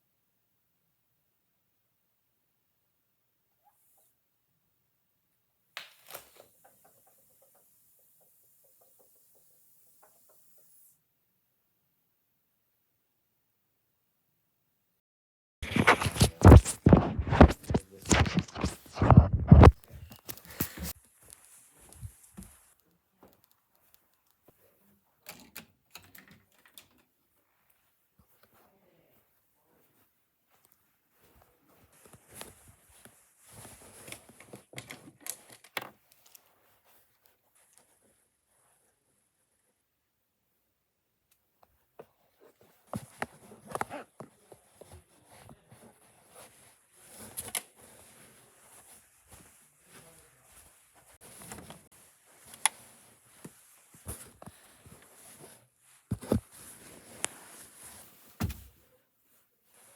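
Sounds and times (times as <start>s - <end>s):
faint clicks and taps: 15.6s - 24.6s.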